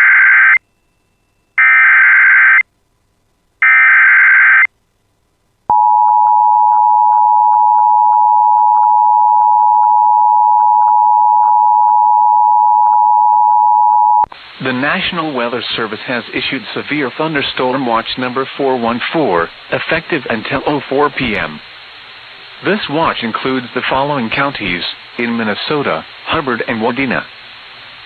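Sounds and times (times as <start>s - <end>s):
long steady attention tone: 0.0s - 27.3s.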